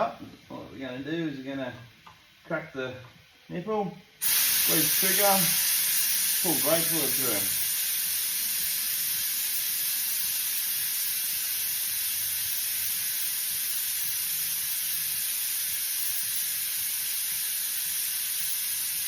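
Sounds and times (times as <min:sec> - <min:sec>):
compressed air hissing: 0:04.2 - 0:19.0.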